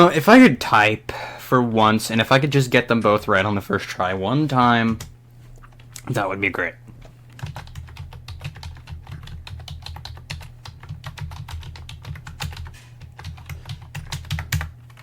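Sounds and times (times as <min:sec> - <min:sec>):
steady low hum: 0:00.0 - 0:15.0
keyboard typing: 0:07.4 - 0:15.0.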